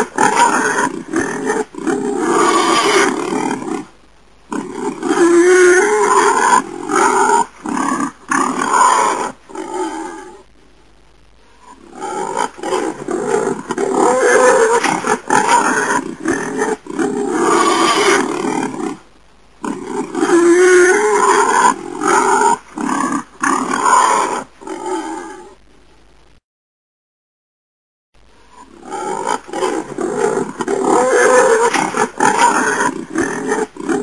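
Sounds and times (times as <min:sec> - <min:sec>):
wild boar grunting and growling: 0:28.6 - 0:34.0.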